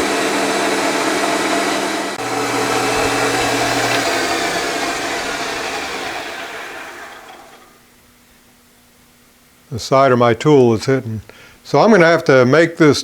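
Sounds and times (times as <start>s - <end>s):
wood lathe humming: 0.0s - 7.8s.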